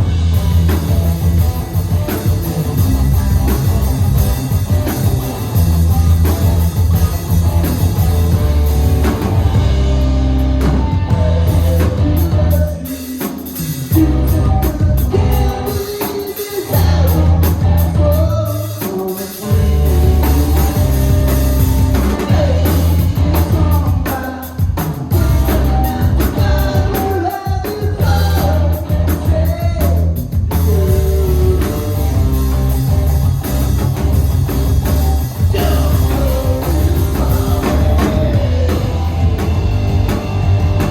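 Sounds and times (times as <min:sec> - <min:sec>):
heavy low bass notes: 0:00.0 - 0:12.8, 0:13.9 - 0:15.8, 0:16.8 - 0:18.6, 0:19.5 - 0:24.1, 0:25.1 - 0:27.1, 0:27.9 - 0:40.9
live rock band playing: 0:00.0 - 0:40.9
person singing: 0:10.7 - 0:21.0, 0:21.9 - 0:32.2, 0:35.4 - 0:39.6.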